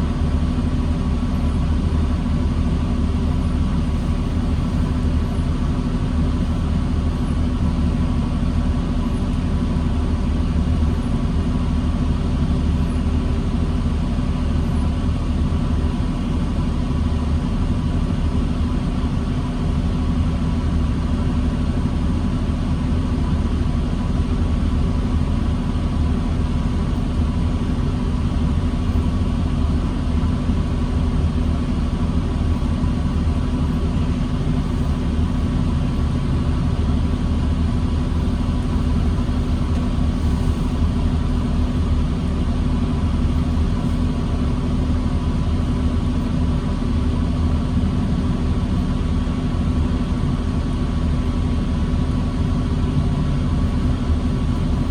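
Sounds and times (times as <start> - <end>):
bus diesel engine droning: 0.0 - 54.9.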